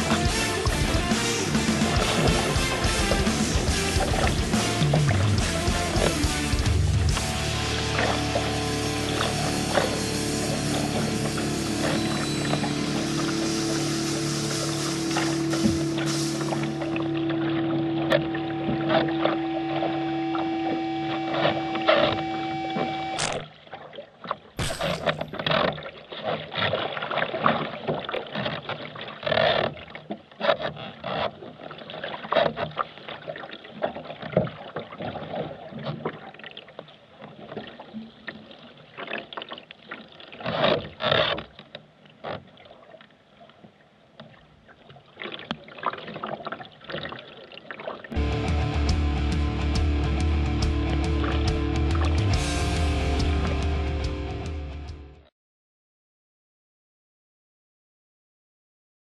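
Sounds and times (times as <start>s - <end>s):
background music: 0.0s - 17.2s, 48.2s - 55.2s
water splashing: 0.0s - 54.4s
kayak paddle strokes: 0.0s - 54.8s.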